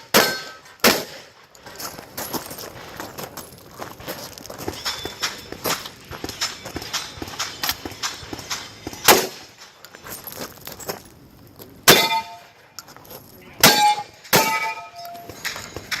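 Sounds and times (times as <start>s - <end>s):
steel targets clanging: 0.0s - 2.9s, 4.3s - 11.1s, 11.8s - 12.8s, 13.6s - 16.0s.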